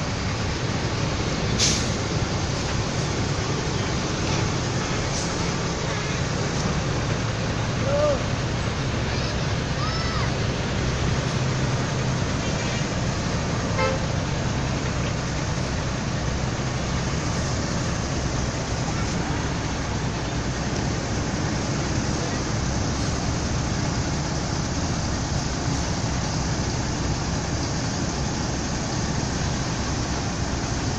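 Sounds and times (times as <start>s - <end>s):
bus engines running: 0.0s - 30.9s
traffic noise: 0.0s - 30.9s
horn toots: 13.8s - 14.1s.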